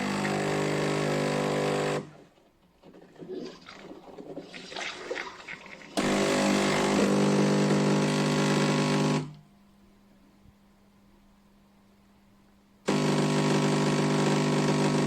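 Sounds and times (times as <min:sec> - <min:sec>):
coffee maker pump humming: 0:00.0 - 0:02.1, 0:06.0 - 0:09.3, 0:12.9 - 0:15.0.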